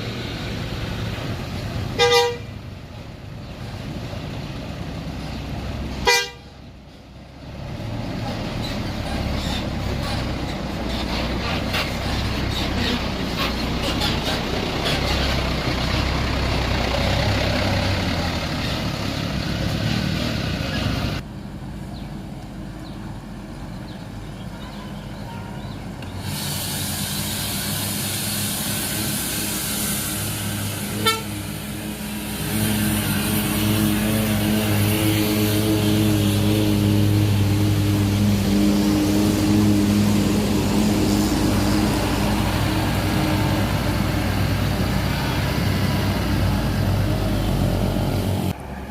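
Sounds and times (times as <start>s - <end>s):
bus diesel engines running: 0.0s - 48.9s
bus horn sounding: 1.9s - 2.6s, 6.0s - 6.6s, 24.6s - 25.8s, 30.8s - 31.6s.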